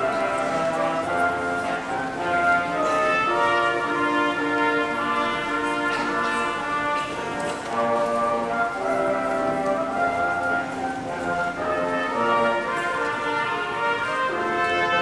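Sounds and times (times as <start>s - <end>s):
brass ensemble music: 0.0s - 15.0s.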